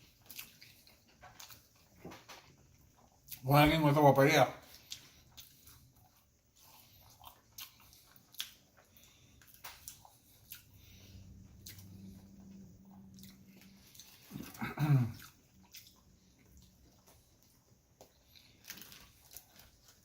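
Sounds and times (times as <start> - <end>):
wet chewing mouth clicks: 4.7 - 14.6, 15.2 - 18.6.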